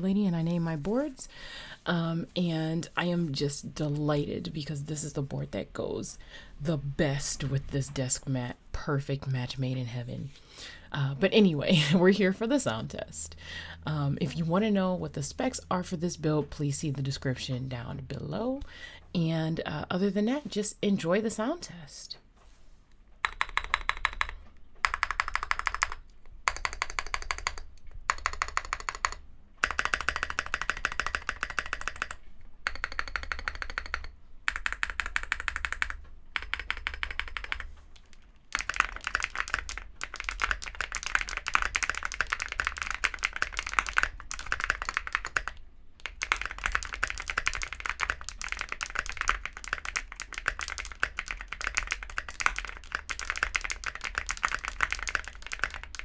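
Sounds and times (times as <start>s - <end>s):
typing on mechanical keyboard: 23.2s - 56.0s.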